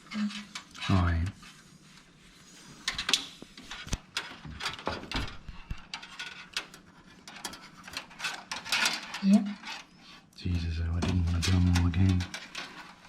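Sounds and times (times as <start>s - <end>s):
cables and hardware rattling: 2.8s - 9.8s, 10.9s - 13.0s.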